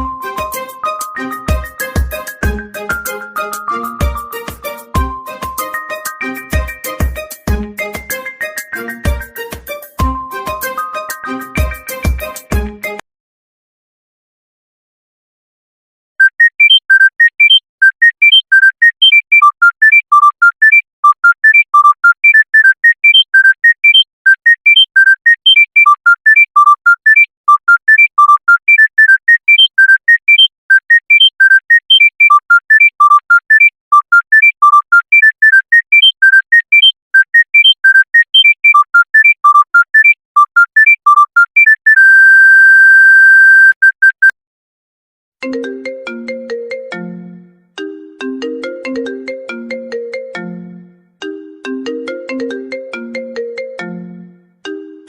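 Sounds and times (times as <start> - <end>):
lower-pitched ringtone: 16.2 - 44.2
electronic beeping ringtone: 16.2 - 44.4.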